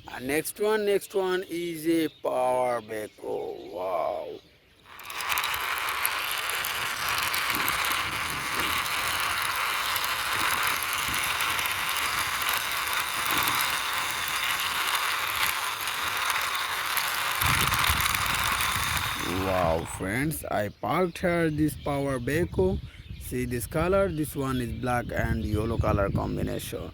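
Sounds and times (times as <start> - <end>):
toy wheels and gears rattling: 3.3 - 20.4
small clicks: 4.8 - 20.4.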